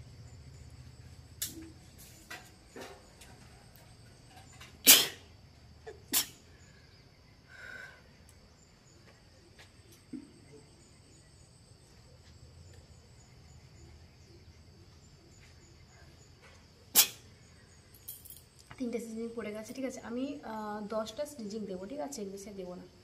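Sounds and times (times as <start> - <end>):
woman sneezing: 4.8 - 5.2.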